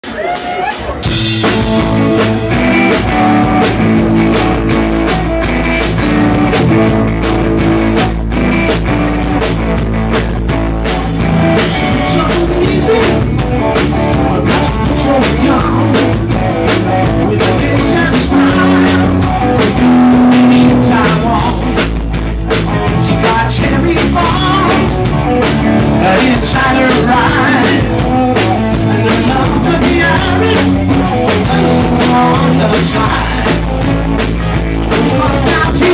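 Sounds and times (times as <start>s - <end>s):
drum kit: 0.0s - 35.9s
guitar: 0.0s - 35.9s
live rock band playing: 0.0s - 35.9s
person singing: 11.6s - 21.8s, 22.8s - 25.1s, 25.9s - 28.0s, 28.8s - 33.8s, 34.9s - 35.9s.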